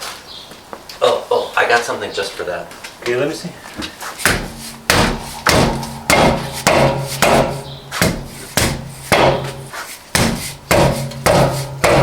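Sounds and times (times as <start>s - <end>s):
hammer striking wheel: 4.2s - 12.0s.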